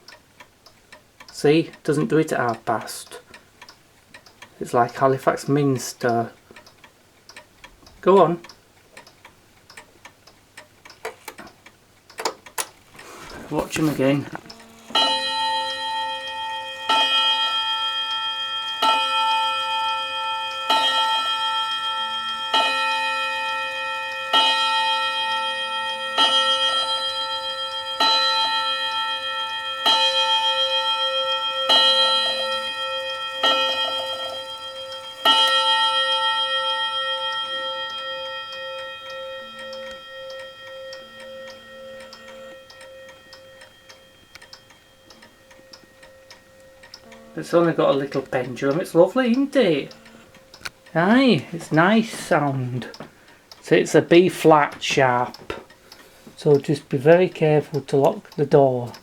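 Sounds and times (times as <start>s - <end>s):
wall clock striking bell: 13.1s - 53.0s.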